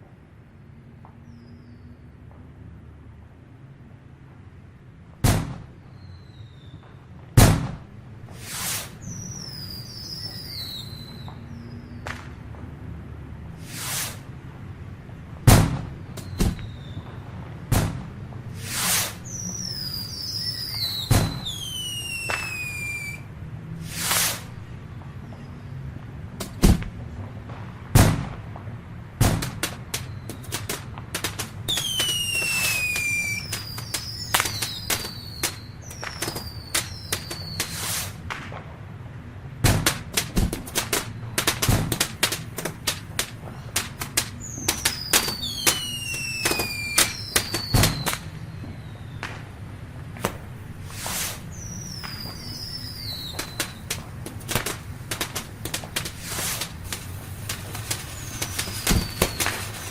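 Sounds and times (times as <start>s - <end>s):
whistling fireworks: 0.7s - 3.2s, 5.2s - 59.9s
fireworks bangs and crackling: 4.2s - 59.9s
deep firework booms: 5.2s - 8.4s, 15.5s - 23.2s, 26.6s - 38.9s, 39.6s - 59.9s.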